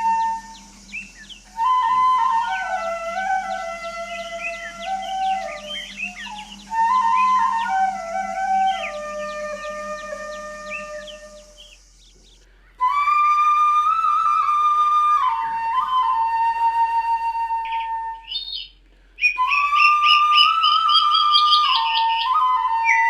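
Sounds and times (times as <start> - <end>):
flute long held notes: 0.0 - 18.6, 19.2 - 23.0.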